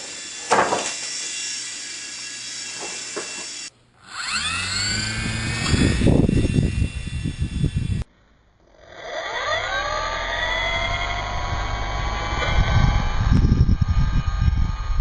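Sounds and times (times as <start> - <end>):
toy helicopter rotors whining: 0.0 - 15.0
loud low fluttering: 4.3 - 8.0, 8.6 - 15.0.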